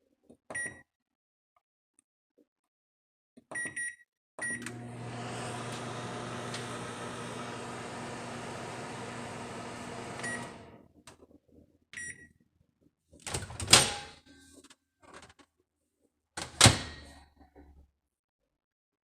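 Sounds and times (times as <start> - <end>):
microwave oven humming: 4.6 - 10.8.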